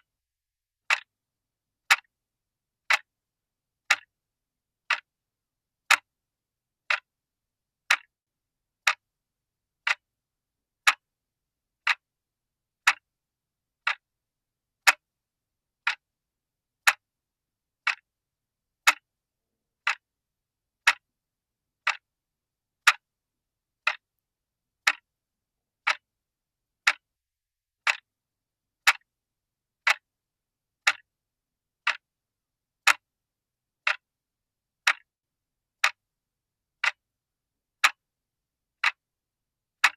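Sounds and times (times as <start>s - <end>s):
clock ticking: 0.9s - 1.1s, 1.9s - 2.1s, 2.9s - 3.1s, 3.9s - 4.1s, 4.9s - 5.1s, 5.9s - 6.1s, 6.8s - 7.1s, 7.8s - 8.1s, 8.8s - 9.0s, 9.8s - 10.1s, 10.8s - 11.0s, 11.8s - 12.0s, 12.8s - 13.1s, 13.8s - 14.0s, 14.8s - 15.0s, 15.8s - 16.0s, 16.8s - 17.0s, 17.8s - 18.1s, 18.8s - 19.1s, 19.8s - 20.0s, 20.8s - 21.1s, 21.8s - 22.1s, 22.8s - 23.1s, 23.8s - 24.0s, 24.8s - 25.1s, 25.8s - 26.0s, 26.8s - 27.1s, 27.8s - 28.1s, 28.8s - 29.1s, 29.8s - 30.1s, 30.8s - 31.1s, 31.8s - 32.1s, 32.8s - 33.1s, 33.8s - 34.1s, 34.8s - 35.1s, 35.8s - 36.0s, 36.8s - 37.0s, 37.8s - 38.0s, 38.8s - 39.0s.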